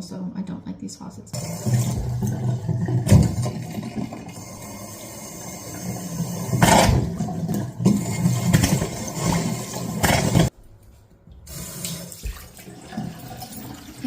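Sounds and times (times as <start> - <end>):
faucet spitting and sputtering: 1.4 - 10.5.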